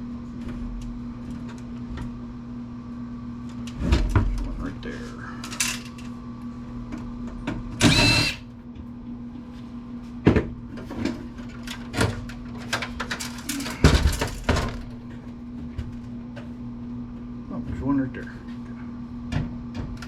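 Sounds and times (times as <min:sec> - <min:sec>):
steady low hum: 0:00.0 - 0:20.0
cordless drill running: 0:07.8 - 0:08.5.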